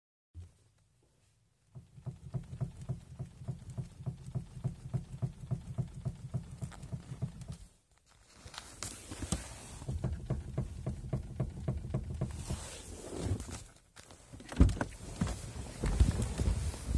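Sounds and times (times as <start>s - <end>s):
steering rack knocking: 1.7s - 7.7s, 9.7s - 12.5s.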